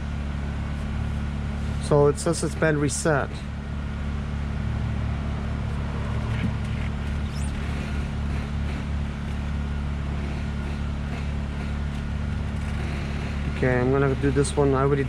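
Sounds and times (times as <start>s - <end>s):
low mechanical hum: 0.0s - 15.0s
high rising chirp: 6.6s - 8.0s.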